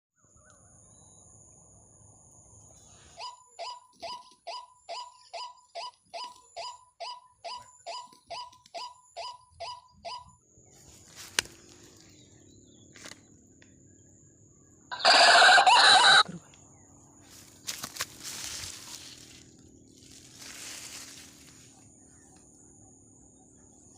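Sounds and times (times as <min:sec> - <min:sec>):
waterhen calling: 0:14.9 - 0:16.4.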